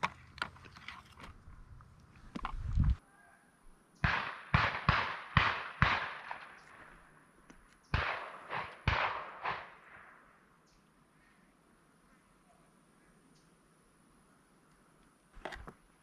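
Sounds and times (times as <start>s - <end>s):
shotgun blasts echoing: 4.0s - 6.9s, 7.9s - 10.3s.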